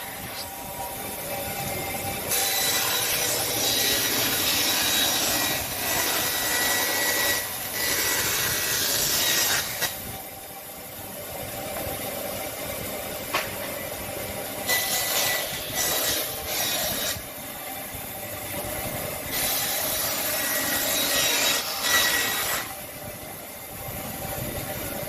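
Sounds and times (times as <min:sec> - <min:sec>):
saw cutting wood: 0:01.9 - 0:10.0, 0:14.6 - 0:17.4, 0:19.3 - 0:22.8.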